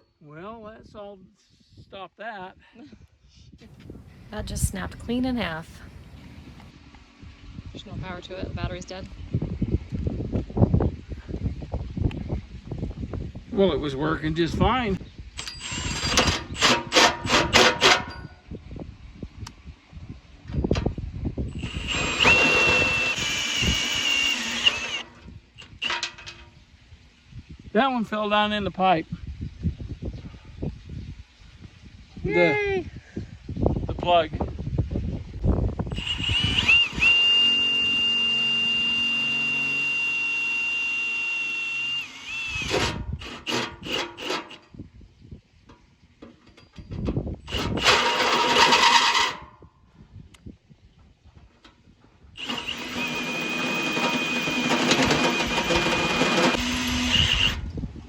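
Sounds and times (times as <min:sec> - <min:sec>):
cordless drill boring into metal: 0:15.4 - 0:18.2, 0:21.5 - 0:26.4, 0:35.9 - 0:44.6, 0:47.5 - 0:49.4, 0:52.4 - 0:57.7
hand tool scraping on metal: 0:42.7 - 0:44.6, 0:47.6 - 0:49.4.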